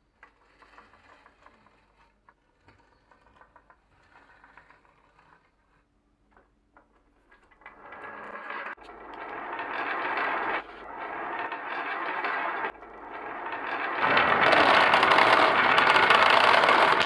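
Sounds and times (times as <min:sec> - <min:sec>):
wooden balls rolling down marble run: 0:06.4 - 0:17.0.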